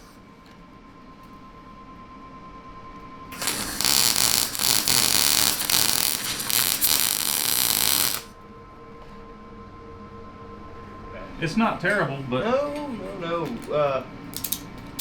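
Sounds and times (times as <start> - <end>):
arc welding crackling hiss: 3.3 - 8.3.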